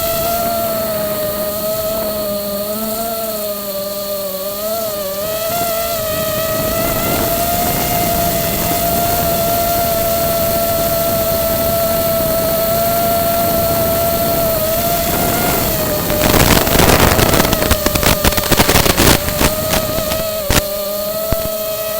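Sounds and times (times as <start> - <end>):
drone motors whining: 0.0 - 21.9
wind rushing over microphone: 5.5 - 21.5.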